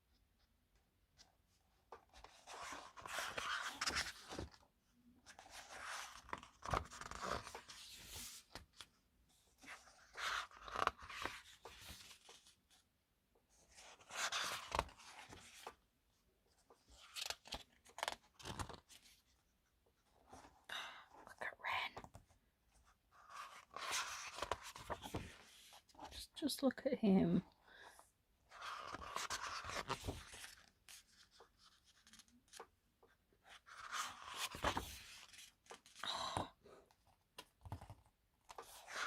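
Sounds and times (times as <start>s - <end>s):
pages turning and rustling: 1.2s - 4.6s, 5.2s - 12.8s, 13.6s - 15.8s, 16.6s - 19.3s, 23.2s - 26.2s, 28.5s - 36.0s, 37.4s - 39.0s.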